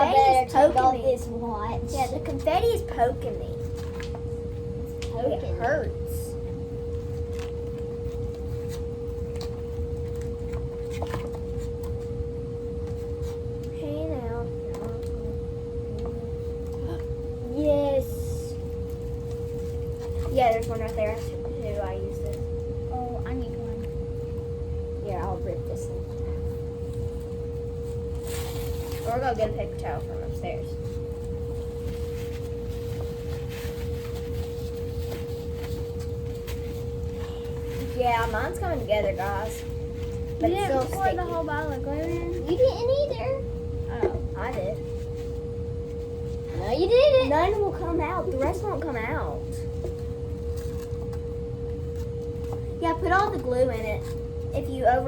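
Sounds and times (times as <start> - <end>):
air conditioner humming: 0.0 - 55.0
steady pure tone: 11.9 - 55.0.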